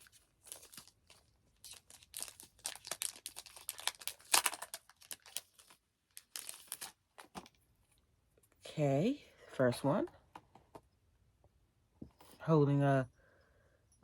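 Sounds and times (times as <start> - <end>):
packaging crinkling and tearing: 0.0 - 7.6.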